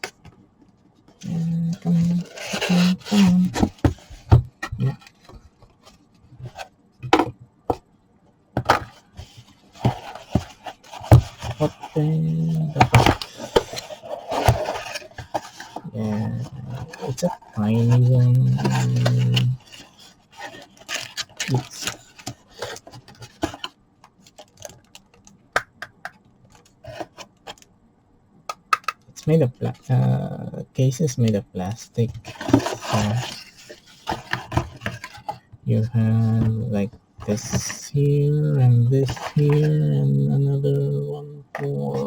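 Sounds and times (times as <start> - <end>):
packaging rubbing: 1.2 - 6.7, 8.9 - 25.0, 32.2 - 35.4
packaging clicks and knocks: 12.7 - 15.9
plastic clicks and taps: 28.5 - 29.1.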